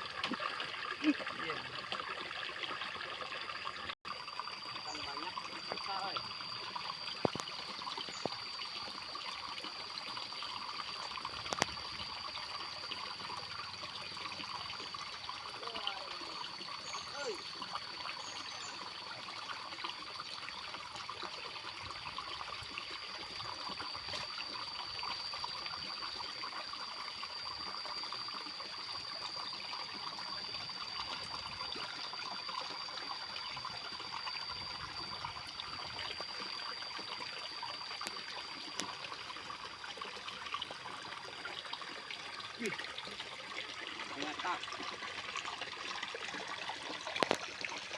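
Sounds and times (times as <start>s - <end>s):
water trickling into a pond: 0.0s - 47.9s
high-pitched whine: 23.2s - 39.3s.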